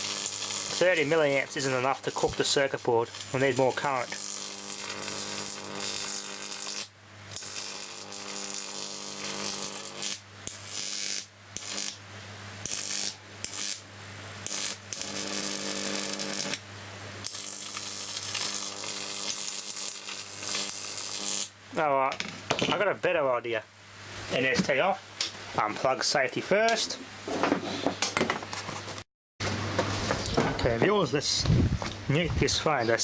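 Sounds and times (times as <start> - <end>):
electrical arc buzzing and crackling: 0.0 - 23.6.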